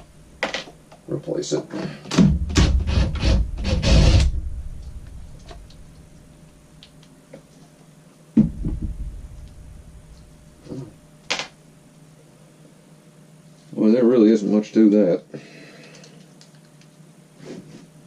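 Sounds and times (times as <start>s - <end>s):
thump and rumble: 2.1s - 6.0s, 8.4s - 11.0s.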